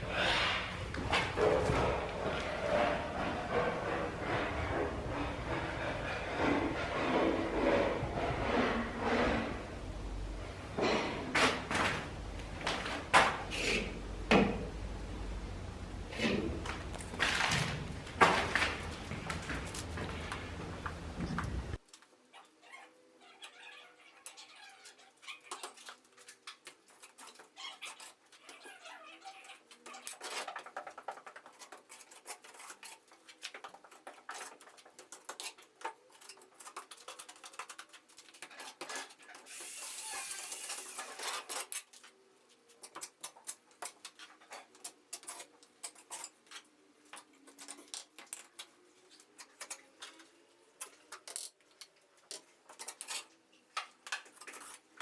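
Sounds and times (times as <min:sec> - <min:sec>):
hand tools scraping and clinking: 0:00.0 - 0:09.7, 0:16.2 - 0:21.8, 0:29.4 - 0:55.0.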